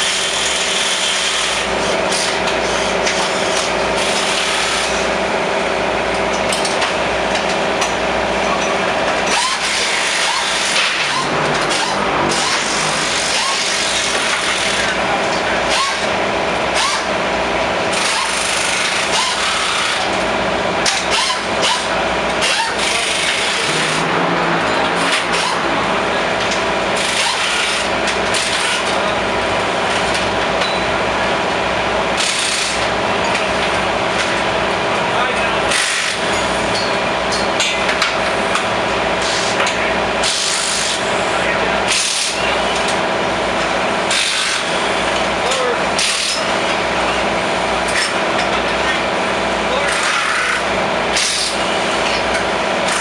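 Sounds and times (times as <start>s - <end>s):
steady hum: 1.6s - 39.2s
small motors and power tools whirring: 9.3s - 15.0s, 15.7s - 17.2s, 17.9s - 20.2s, 20.8s - 24.0s, 26.5s - 29.0s, 32.2s - 32.9s, 45.5s - 46.5s.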